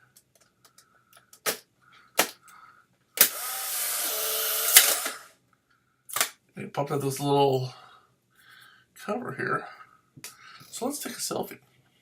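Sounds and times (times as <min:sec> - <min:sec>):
camera motor whirring: 0:03.2 - 0:05.3.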